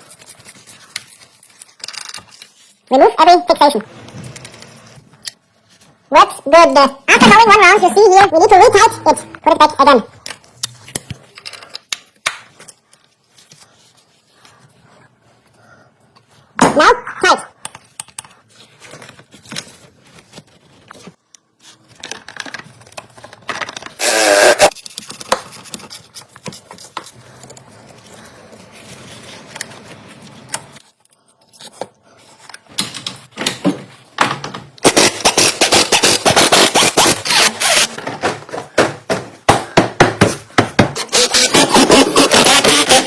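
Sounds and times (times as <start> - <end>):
loud rasp: 24.0 - 24.8, 41.0 - 43.0.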